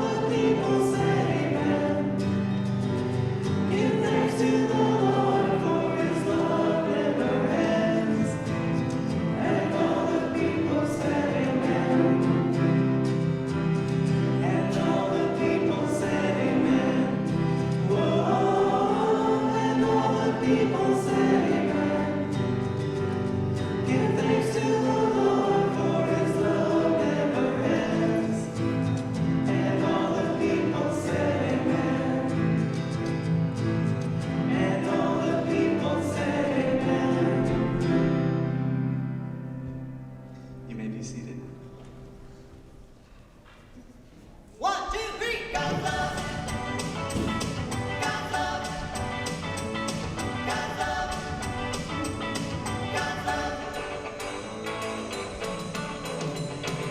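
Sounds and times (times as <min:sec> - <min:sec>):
choir singing a worship song: 0:00.0 - 0:39.2, 0:45.5 - 0:54.6
steady beat accompaniment: 0:45.6 - 0:53.6.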